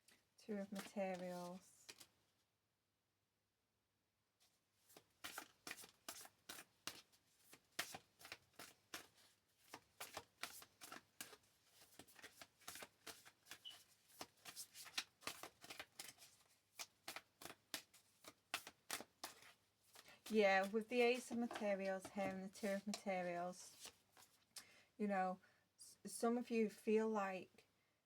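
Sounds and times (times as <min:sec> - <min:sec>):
cards being shuffled: 0:00.7 - 0:02.1, 0:05.0 - 0:24.4.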